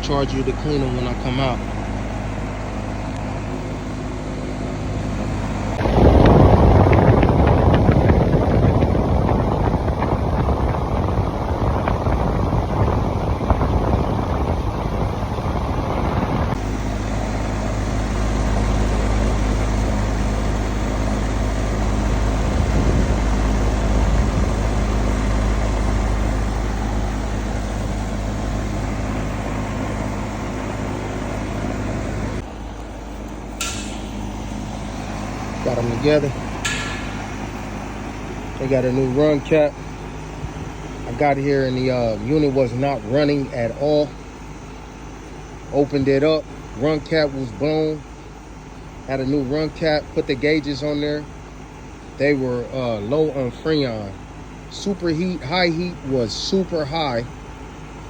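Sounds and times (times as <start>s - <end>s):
compressor mains hum: 0.0s - 58.0s
condenser fan rushing: 0.0s - 58.0s
loud rushing noise: 5.2s - 16.7s, 33.6s - 39.8s.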